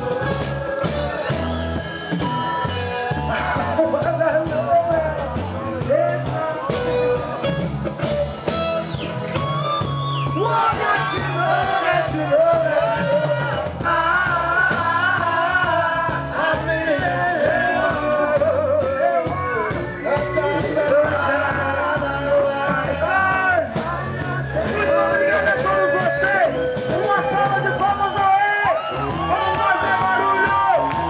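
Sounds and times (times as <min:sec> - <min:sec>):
live reggae band playing: 0:00.0 - 0:31.0.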